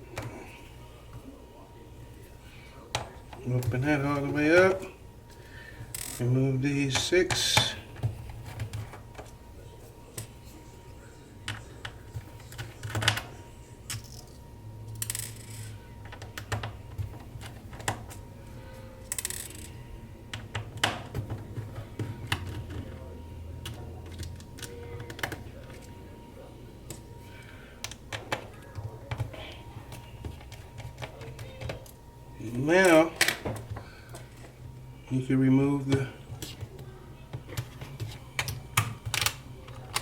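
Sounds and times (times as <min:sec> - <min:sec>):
faint steady hum: 0:00.0 - 0:40.0.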